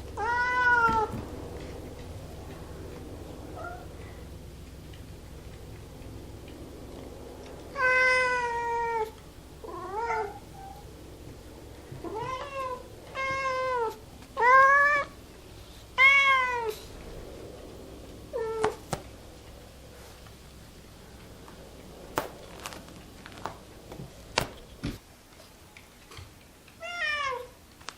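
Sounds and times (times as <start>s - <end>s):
cat meowing: 0.2s - 1.2s, 3.6s - 3.9s, 7.7s - 10.9s, 12.0s - 15.2s, 16.0s - 16.7s, 18.3s - 18.8s, 26.8s - 27.5s.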